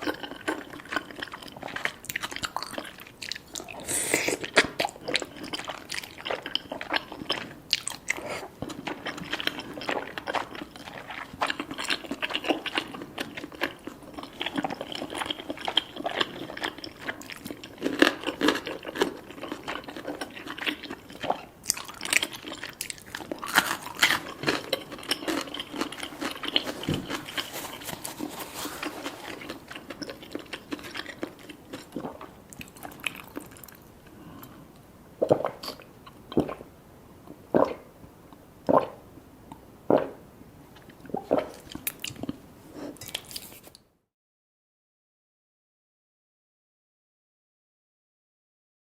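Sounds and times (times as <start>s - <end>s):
chewing and biting food: 0.0s - 33.9s.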